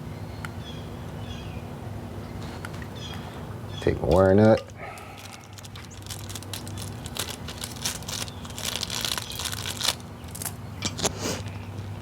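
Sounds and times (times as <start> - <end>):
plastic wire nut crackling: 4.1 - 11.0.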